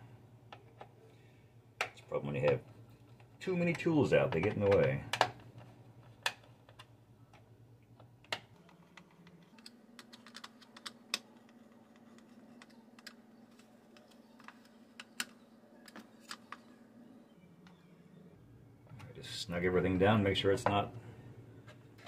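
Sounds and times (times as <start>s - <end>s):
faint low hum: 0.0s - 22.0s
screwdriver and plastic parts clicking: 8.0s - 16.7s.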